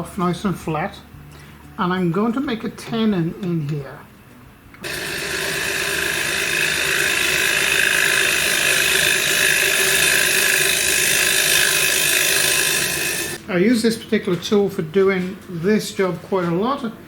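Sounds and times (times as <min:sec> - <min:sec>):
lathe hum: 0:04.8 - 0:13.4
lathe tool scraping wood: 0:04.8 - 0:13.4.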